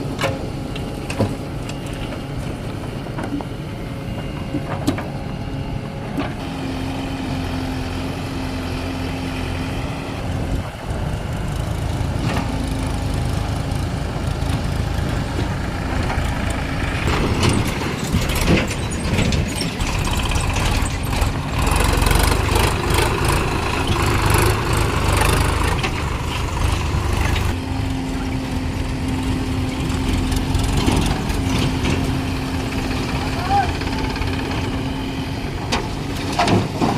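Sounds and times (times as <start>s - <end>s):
diesel engine humming: 0.0s - 36.9s
rattling and scraping: 14.4s - 27.6s.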